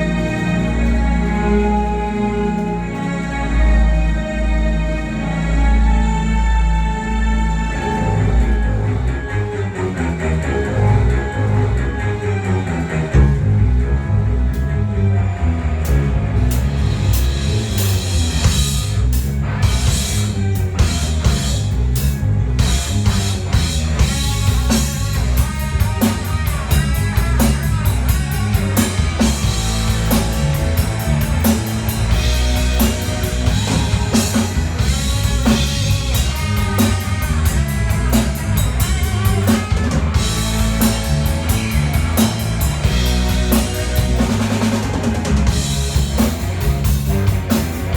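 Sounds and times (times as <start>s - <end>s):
bass: 0.0s - 47.9s
guitar: 0.0s - 47.9s
drum kit: 16.5s - 47.9s.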